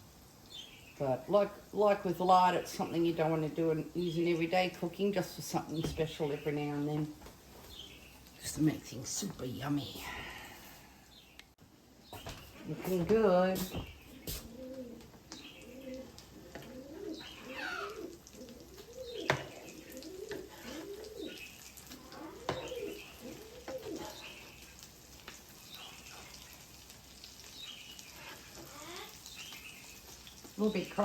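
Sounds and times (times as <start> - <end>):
dove cooing: 14.1 - 24.6.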